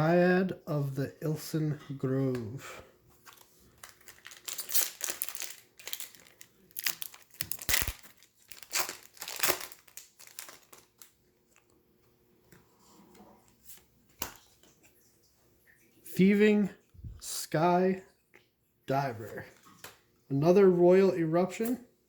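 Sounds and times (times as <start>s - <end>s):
wrapper tearing and crinkling: 3.2s - 11.2s.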